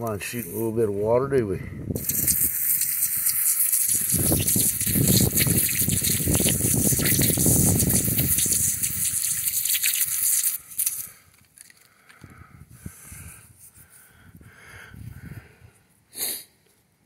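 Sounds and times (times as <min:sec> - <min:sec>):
hose water spraying into mud: 0:02.0 - 0:11.2.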